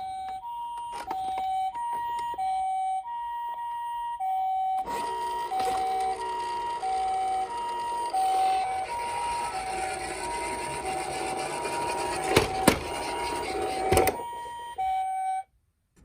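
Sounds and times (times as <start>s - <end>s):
toy two-tone siren: 0.0s - 15.5s
rubbing scraping noise: 4.9s - 14.2s.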